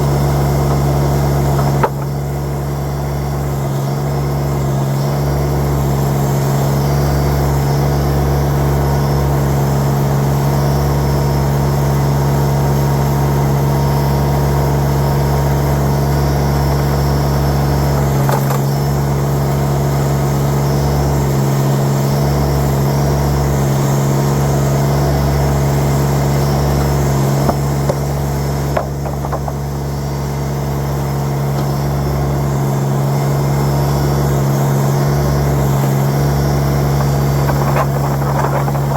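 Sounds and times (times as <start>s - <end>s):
tractor diesel engine running: 0.0s - 38.9s
sharp knocks: 0.4s - 2.3s, 27.4s - 30.3s, 36.8s - 38.9s.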